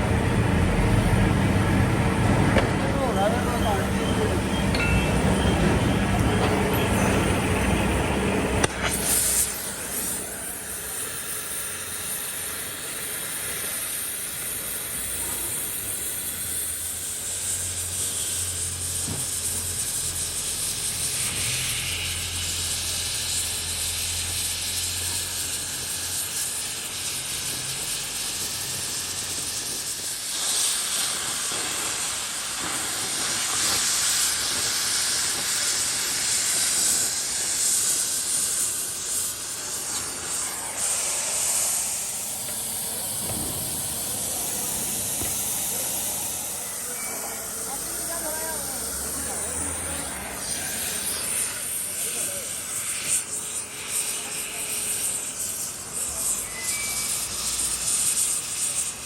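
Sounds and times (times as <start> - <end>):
low hum: 0.0 - 10.8
loud machine hum: 0.0 - 59.0
steady hiss: 0.0 - 59.0.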